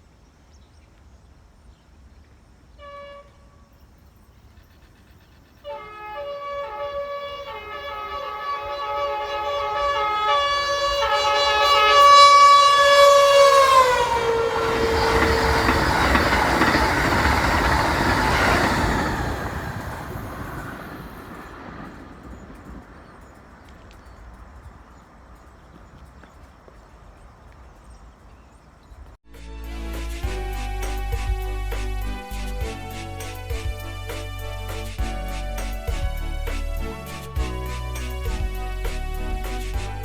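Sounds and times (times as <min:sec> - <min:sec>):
train horn blasts: 0:02.8 - 0:03.8, 0:05.6 - 0:20.3, 0:29.3 - 0:40.0
train rushing past: 0:05.5 - 0:25.5, 0:29.4 - 0:40.0.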